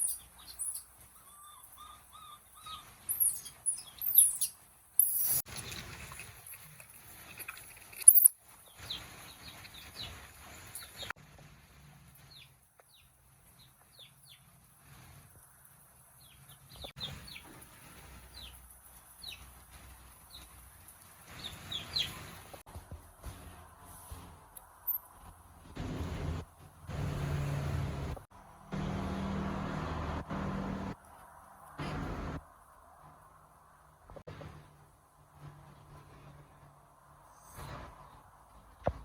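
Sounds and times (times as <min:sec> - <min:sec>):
small animal squeaking: 0:00.0 - 0:05.4.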